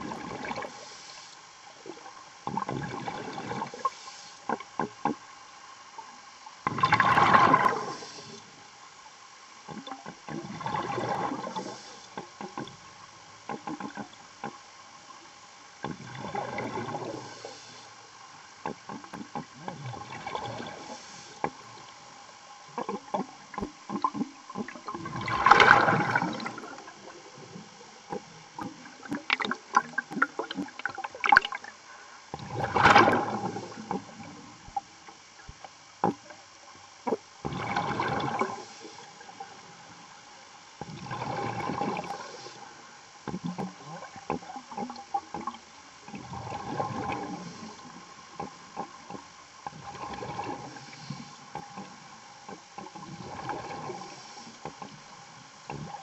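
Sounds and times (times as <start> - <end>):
exhaled bubbles underwater: 0.0 - 1.0, 1.6 - 5.3, 6.0 - 8.6, 9.6 - 15.2, 15.8 - 36.4, 37.0 - 40.1, 40.8 - 56.0
diver breathing through regulator: 0.6 - 1.4, 3.7 - 4.6, 7.6 - 8.6, 11.3 - 12.3, 16.4 - 18.0, 20.5 - 21.6, 33.2 - 34.3, 38.4 - 39.2, 42.0 - 42.9, 47.2 - 48.0, 50.6 - 51.6, 53.9 - 54.7.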